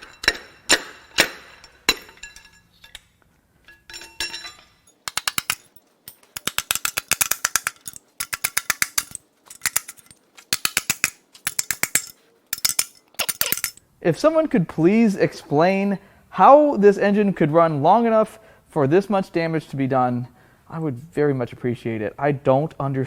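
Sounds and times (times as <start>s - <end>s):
light metal clinks: 3.6s - 13.8s
hand ratchet clicking: 5.1s - 13.8s.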